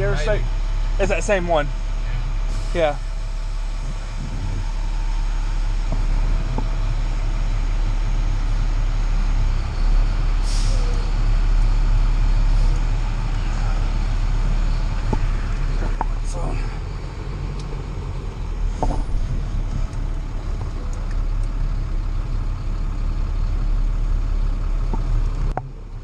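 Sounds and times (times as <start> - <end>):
diesel engine running: 0.0 - 26.0
air brake hiss: 2.5 - 2.8, 10.4 - 11.0.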